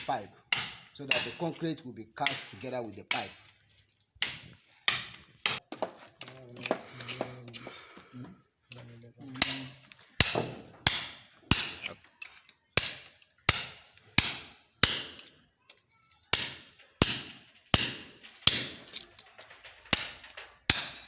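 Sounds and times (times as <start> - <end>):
hammer striking chisel into concrete: 0.0 - 1.6, 2.2 - 3.5, 4.2 - 6.0, 9.3 - 12.0, 12.7 - 15.4, 16.3 - 19.0, 19.9 - 21.0.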